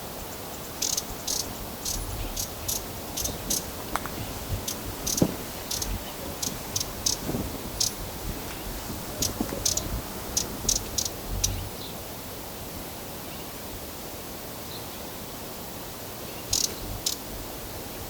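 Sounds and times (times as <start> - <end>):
background hiss: 0.0 - 18.0
hummingbird chip calls: 0.7 - 11.9, 16.5 - 17.2.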